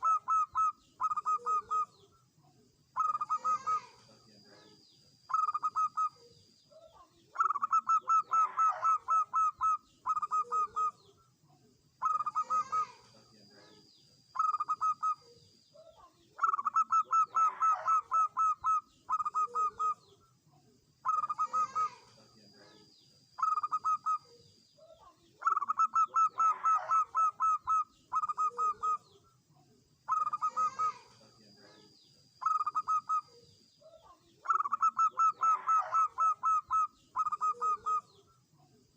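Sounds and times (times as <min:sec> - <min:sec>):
dove cooing: 0:00.0 - 0:02.2, 0:03.0 - 0:11.1, 0:12.0 - 0:13.8, 0:14.4 - 0:20.2, 0:21.0 - 0:29.2, 0:30.1 - 0:38.3.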